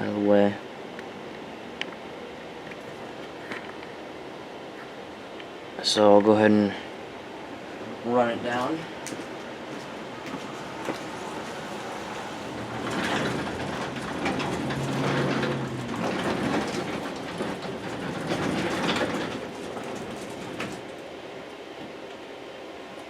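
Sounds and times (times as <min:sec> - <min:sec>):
garage door rolling and rattling: 0:09.2 - 0:21.1.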